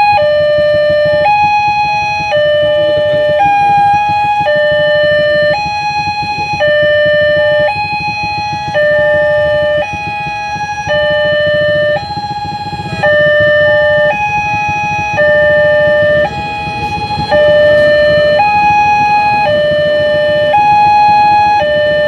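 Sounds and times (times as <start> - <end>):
two-tone level crossing alarm: 0.0 - 22.0
low rumble: 10.5 - 20.4.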